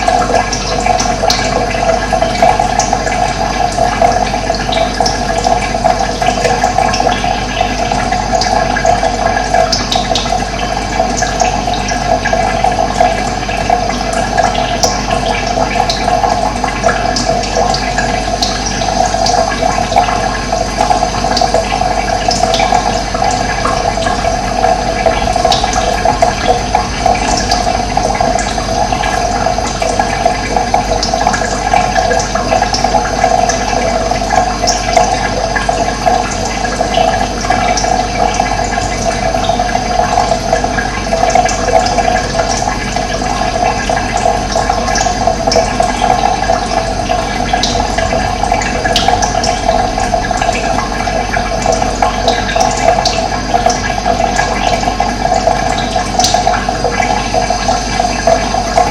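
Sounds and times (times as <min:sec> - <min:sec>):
flowing water: 0:00.0 - 0:58.9.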